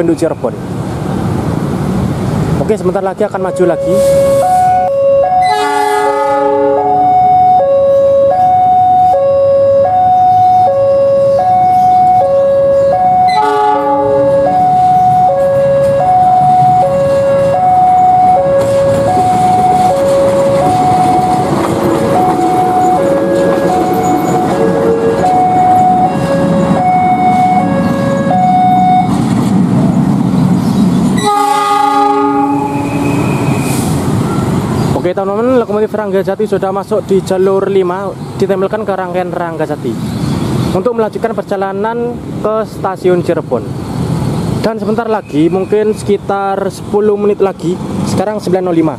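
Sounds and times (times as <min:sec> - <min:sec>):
locomotive engine: 0:00.5 - 0:35.1
locomotive horn blasts: 0:03.5 - 0:29.1, 0:31.2 - 0:33.8
level crossing ding-dong alarm: 0:06.8 - 0:13.4, 0:14.2 - 0:21.6, 0:22.2 - 0:29.1.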